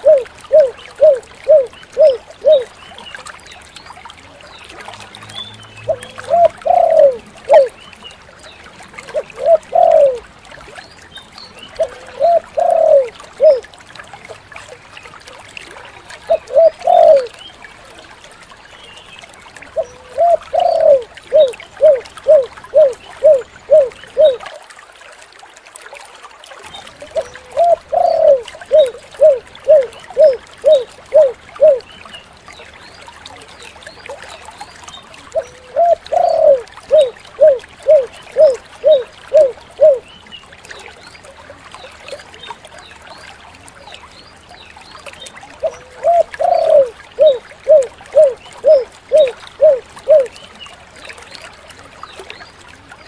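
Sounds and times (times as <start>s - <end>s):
dove cooing: 0.0s - 2.7s, 5.9s - 7.7s, 9.1s - 10.2s, 11.8s - 13.6s, 16.3s - 17.3s, 19.8s - 24.4s, 27.2s - 31.8s, 35.4s - 40.0s, 45.6s - 50.3s.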